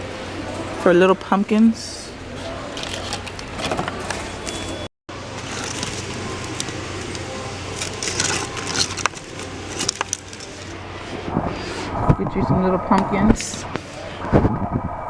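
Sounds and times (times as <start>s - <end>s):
steady low hum: 4.3s - 15.0s
clicks and crackling rustles: 5.4s - 10.8s.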